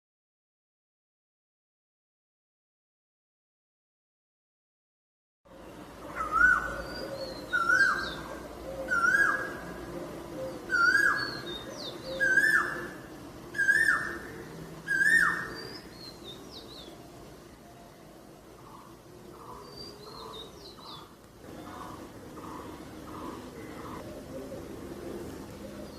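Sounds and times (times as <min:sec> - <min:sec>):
small birds chirping: 0:05.5 - 0:25.9.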